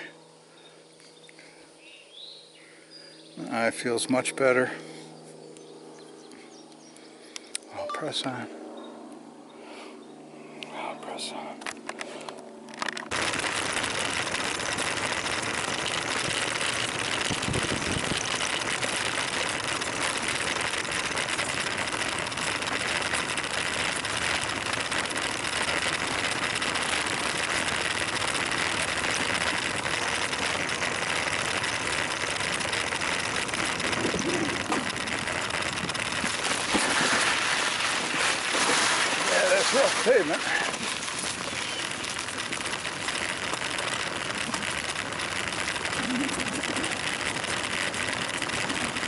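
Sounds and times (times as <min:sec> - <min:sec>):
bicycle tyres rolling on road: 0:11.8 - 0:49.0
wind over microphone: 0:16.2 - 0:18.8, 0:33.4 - 0:37.2.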